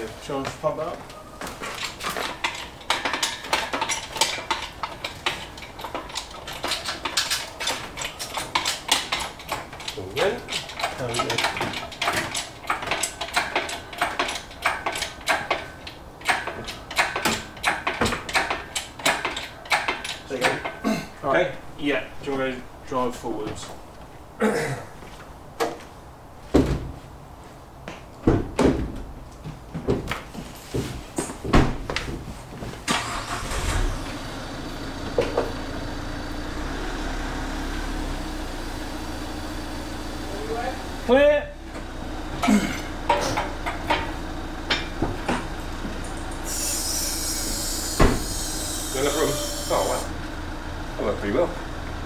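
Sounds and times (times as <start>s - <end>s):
hydraulic jack clicking and clanking: 1.6s - 20.8s, 32.9s - 38.4s, 41.7s - 50.2s
heavy clunks and knocks: 1.8s - 20.8s, 26.5s - 27.0s, 28.2s - 32.3s, 41.7s - 46.2s.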